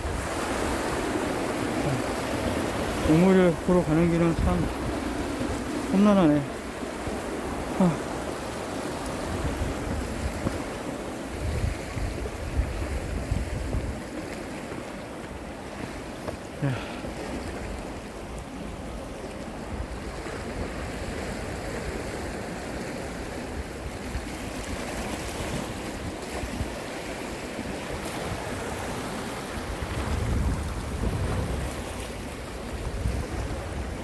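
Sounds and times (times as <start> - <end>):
wind buffeting microphone: 0.0 - 16.1, 27.7 - 34.0
surf on rocky shore: 0.0 - 34.0.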